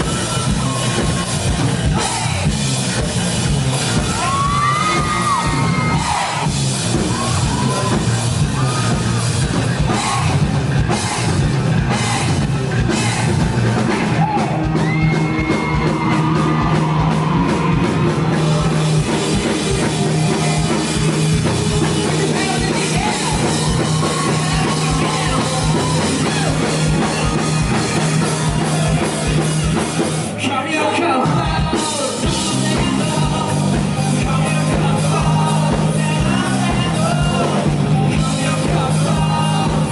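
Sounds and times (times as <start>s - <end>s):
drums: 0.0s - 39.9s
steady bass line: 0.0s - 39.9s
person singing: 9.8s - 39.9s.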